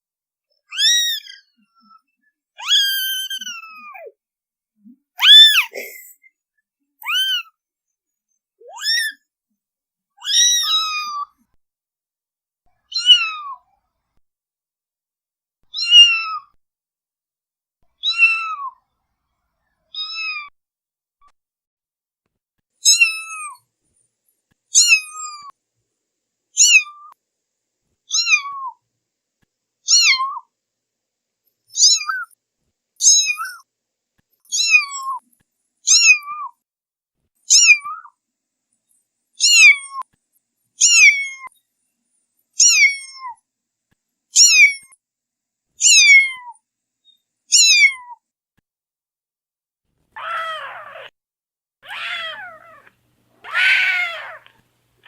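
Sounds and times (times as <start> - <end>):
kitten meowing: 0.7 - 1.4, 2.6 - 4.1, 5.2 - 6.0, 7.0 - 7.5, 8.7 - 9.2, 10.2 - 11.3, 12.9 - 13.6, 15.7 - 16.5, 18.0 - 18.8, 19.9 - 20.5, 22.8 - 23.6, 24.8 - 25.5, 26.6 - 27.1, 28.1 - 28.8, 29.9 - 30.5, 31.8 - 32.3, 33.0 - 33.6, 34.5 - 35.2, 35.9 - 36.5, 37.5 - 38.1, 39.4 - 40.0, 40.8 - 41.5, 42.6 - 43.3, 44.4 - 44.9, 45.8 - 46.6, 47.5 - 48.2, 50.2 - 51.1, 51.8 - 54.6.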